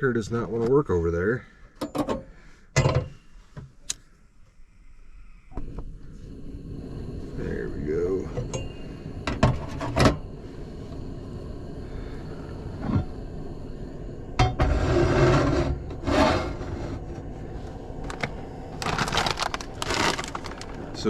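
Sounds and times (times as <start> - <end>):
rustling clatter: 18.1 - 21.0.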